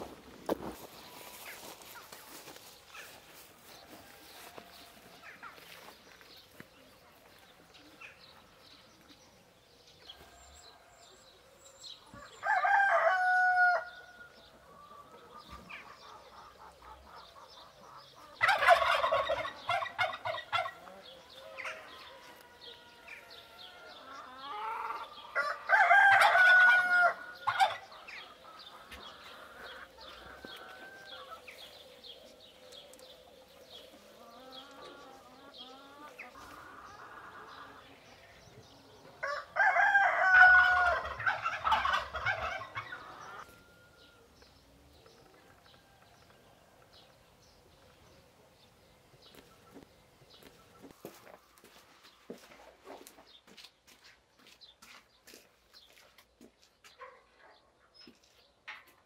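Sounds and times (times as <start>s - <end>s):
rooster crowing: 12.2s - 14.2s, 21.4s - 27.6s, 39.2s - 42.4s.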